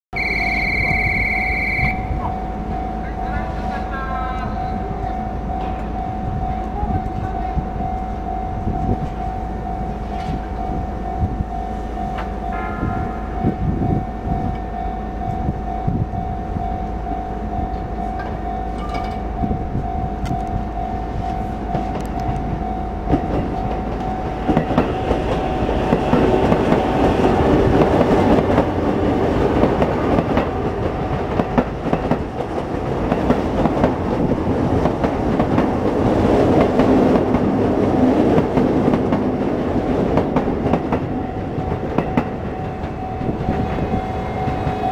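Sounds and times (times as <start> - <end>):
level crossing warning bell: 0.2 - 34.3, 38.8 - 44.9
train wheels clattering: 21.2 - 44.9.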